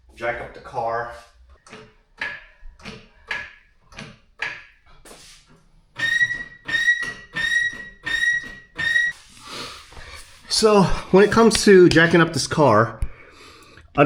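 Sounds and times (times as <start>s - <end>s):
car jack strokes: 1.1s - 12.6s
car jack squealing: 1.6s - 12.4s.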